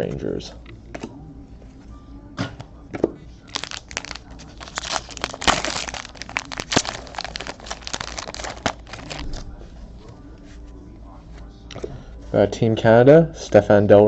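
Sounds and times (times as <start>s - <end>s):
foil wrapper tearing and crinkling: 3.5s - 9.4s.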